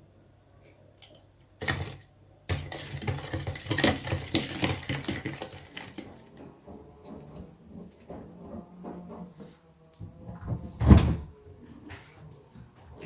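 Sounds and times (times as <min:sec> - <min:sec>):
kitchenware clattering: 0:01.6 - 0:06.6.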